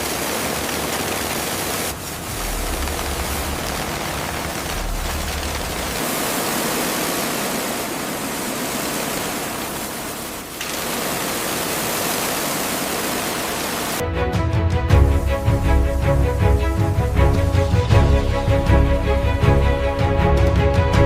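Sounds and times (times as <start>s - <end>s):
loud rushing noise: 1.9s - 10.5s.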